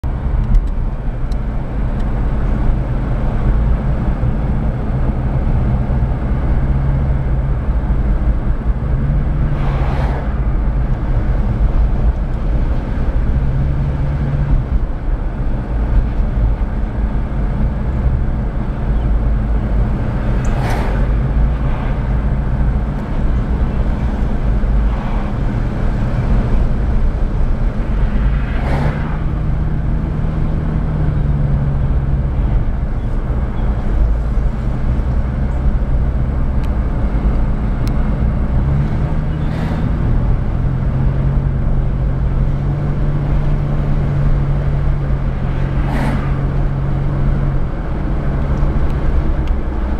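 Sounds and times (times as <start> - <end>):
road noise: 0.0 - 49.9
vehicle engine rumble: 0.0 - 49.9
short whooshes: 45.8 - 46.4.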